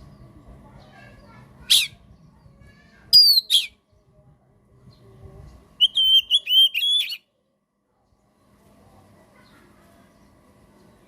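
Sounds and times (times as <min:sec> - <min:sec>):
bird repeated whistled notes: 0:03.2 - 0:03.8, 0:05.8 - 0:07.2
bird whistled calls: 0:03.2 - 0:03.8, 0:05.8 - 0:07.2.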